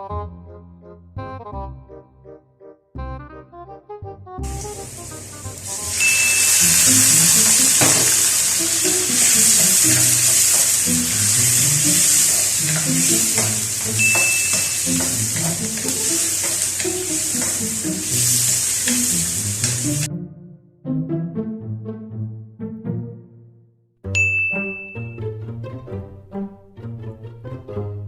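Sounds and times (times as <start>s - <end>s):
background music: 0.0s - 28.0s
food sizzling in oil: 4.5s - 20.1s
spatula scraping pan: 4.9s - 20.0s.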